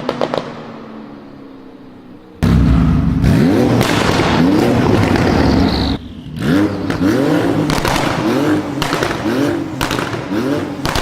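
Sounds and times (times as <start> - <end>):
exhaust pops and crackles: 0.0 - 0.7, 2.4 - 6.2, 6.8 - 11.0
car engine revving: 0.0 - 11.0.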